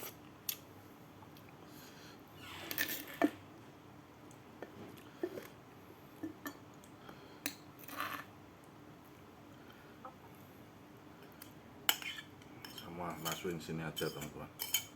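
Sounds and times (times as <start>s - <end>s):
cutlery scraping a plate: 2.6s - 3.4s, 11.9s - 14.9s.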